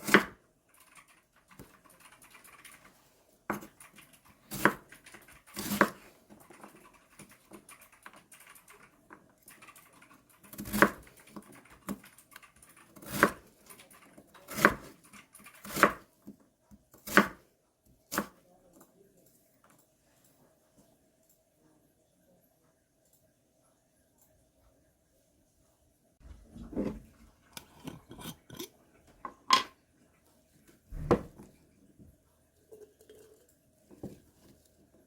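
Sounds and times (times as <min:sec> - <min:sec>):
knife chopping on cutting board: 0:14.5 - 0:15.0, 0:15.6 - 0:16.0, 0:17.0 - 0:17.4, 0:18.1 - 0:18.4.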